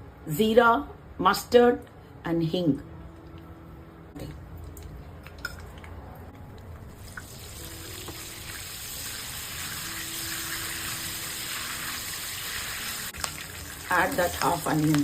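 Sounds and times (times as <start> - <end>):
spices sizzling in hot oil: 6.9 - 15.0
oil popping: 11.6 - 15.0.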